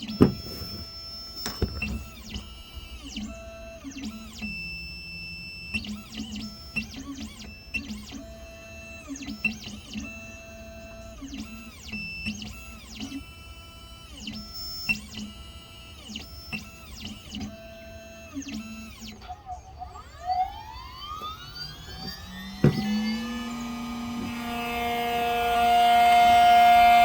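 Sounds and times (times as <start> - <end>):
motor spinning up: 0.2 - 0.9, 20.0 - 27.0
stepper motor whines: 19.4 - 27.0.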